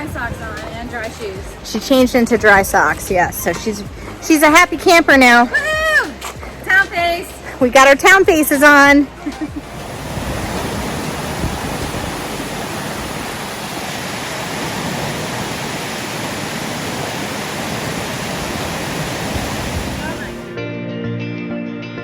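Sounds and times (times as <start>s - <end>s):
mountain stream rushing: 9.1s - 20.6s.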